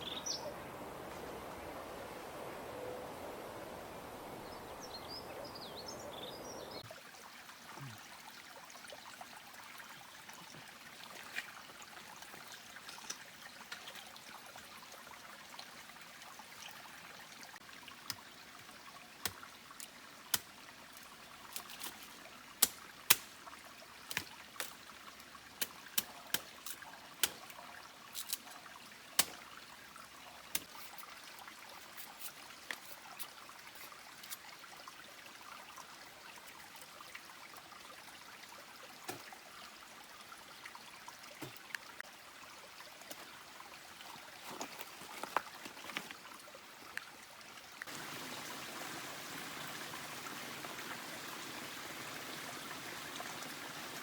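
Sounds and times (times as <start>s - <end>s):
birds chirping: 0.0s - 0.8s, 4.4s - 6.8s
outdoor noise: 0.0s - 54.0s
water trickling: 6.1s - 54.0s
water dripping: 17.6s - 34.6s, 39.0s - 39.5s, 41.1s - 42.1s.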